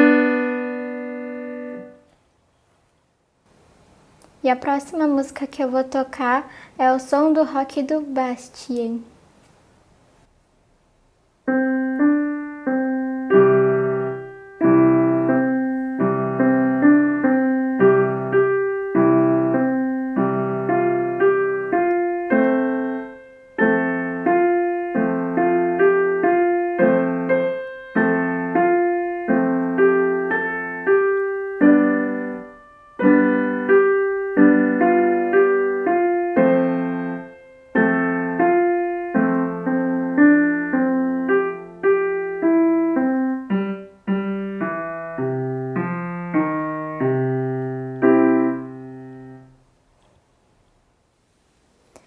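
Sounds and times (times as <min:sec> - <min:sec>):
piano rock-style piece: 0:00.0 - 0:02.0, 0:11.5 - 0:49.5.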